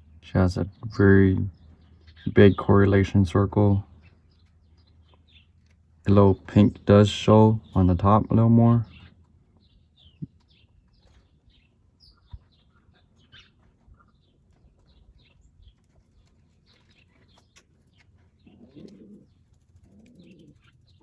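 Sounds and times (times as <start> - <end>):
pigeon cooing: 18.4 - 21.0.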